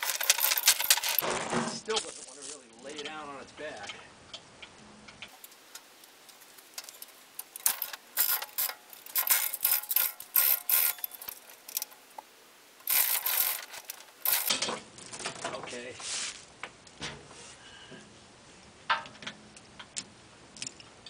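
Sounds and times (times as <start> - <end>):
metal ratchet clicking: 0.0 - 1.2, 6.8 - 12.0, 12.8 - 14.6.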